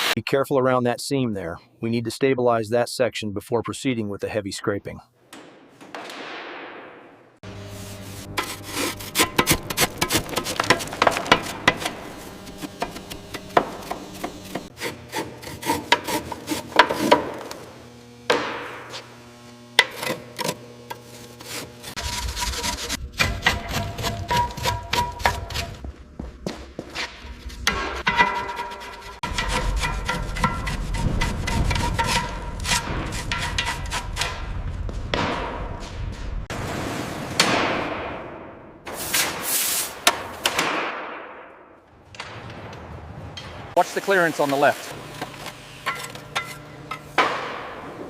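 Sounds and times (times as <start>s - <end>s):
scraping rust off steel: 7.6s - 17.6s, 19.8s - 25.8s, 27.0s - 34.6s, 44.6s - 47.3s.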